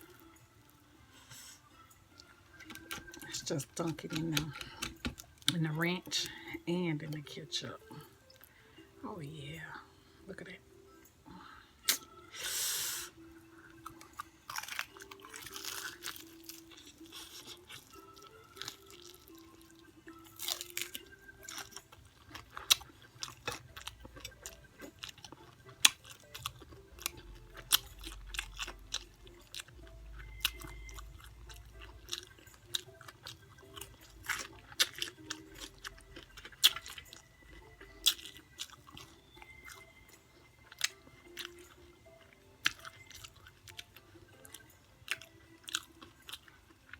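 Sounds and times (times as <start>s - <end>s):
person chewing crunchy food: 0.0s - 5.6s, 11.8s - 46.9s
wet mouth sounds: 11.8s - 13.0s.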